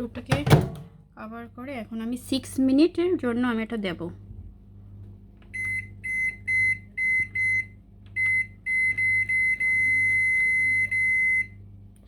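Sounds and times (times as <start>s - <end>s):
low steady hum: 0.0s - 12.0s
microwave keypad beeps: 5.5s - 11.6s.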